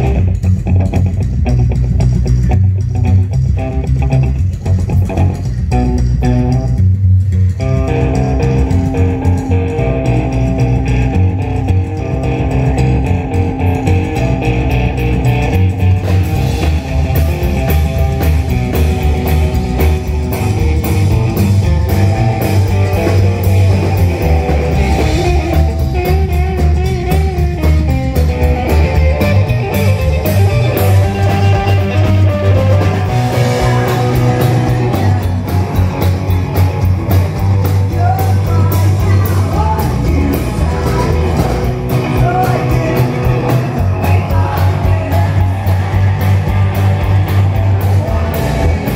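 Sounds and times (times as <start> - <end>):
live rock band playing: 0.0 - 48.9
person singing: 28.7 - 36.1, 37.6 - 46.9, 47.6 - 48.9.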